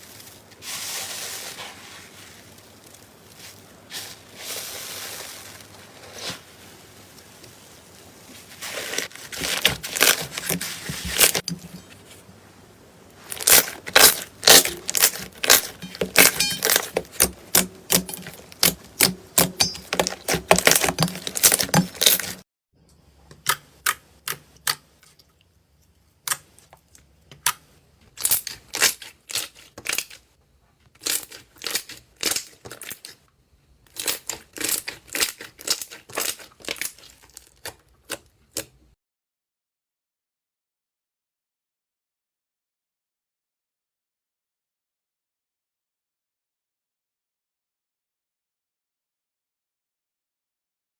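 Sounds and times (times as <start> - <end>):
slime popping and crackling: 13.2 - 22.4.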